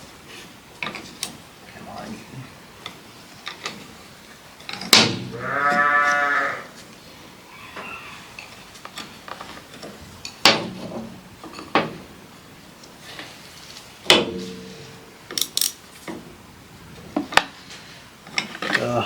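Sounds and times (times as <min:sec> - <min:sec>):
sheep bleating: 0:05.3 - 0:06.7.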